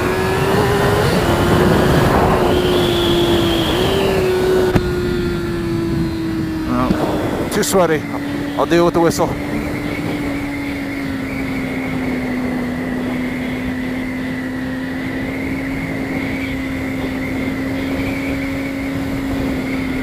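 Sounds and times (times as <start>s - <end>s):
motorcycle engine cruising: 0.0s - 20.0s
wind rushing past: 0.0s - 20.0s
whistle at helmet: 2.5s - 4.3s.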